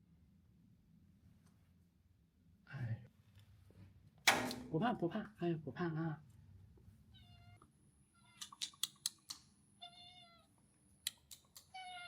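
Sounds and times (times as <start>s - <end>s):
cat meowing: 9.8s - 10.5s, 11.7s - 12.0s.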